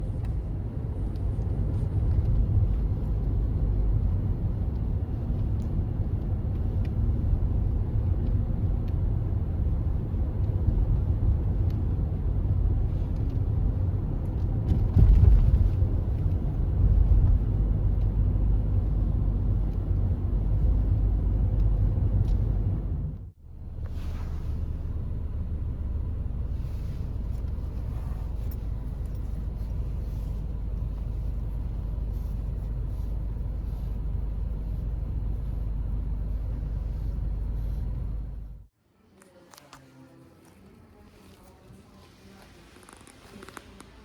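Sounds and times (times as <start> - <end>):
moving car rumble: 0.0 - 38.7.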